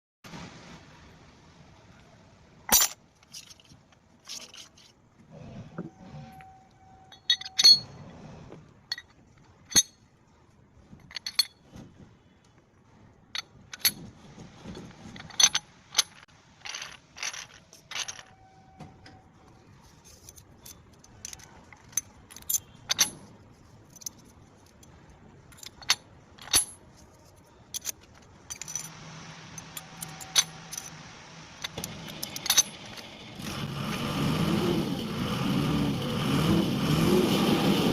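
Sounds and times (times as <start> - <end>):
steel tools clinking: 2.7 - 5.0, 6.3 - 8.0, 8.9 - 10.0, 15.0 - 18.5, 19.9 - 28.9, 29.6 - 31.0, 31.6 - 33.2.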